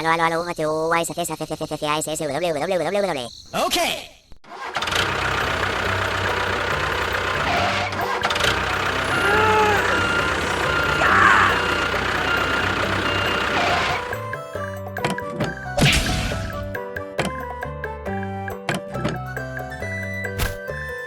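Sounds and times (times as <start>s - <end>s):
vehicle engine running: 4.6s - 14.8s.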